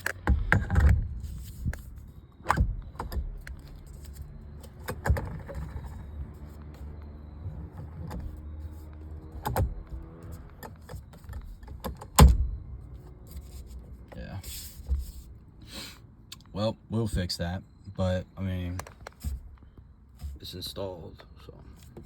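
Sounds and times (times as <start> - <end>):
steering wheel knocks and rattles: 0.1 - 12.7.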